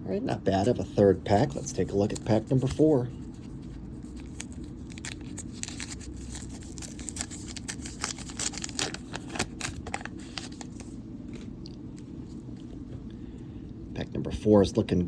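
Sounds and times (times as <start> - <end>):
foil wrapper crackling: 1.3 - 11.5.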